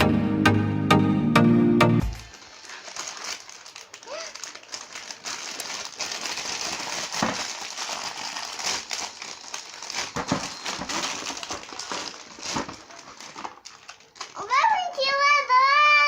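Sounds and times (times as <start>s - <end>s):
packaging crinkling: 2.2s - 15.1s.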